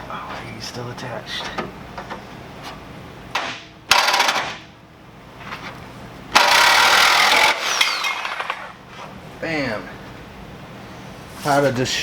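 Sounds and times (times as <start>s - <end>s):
power tool cutting sheet metal: 6.4s - 8.7s.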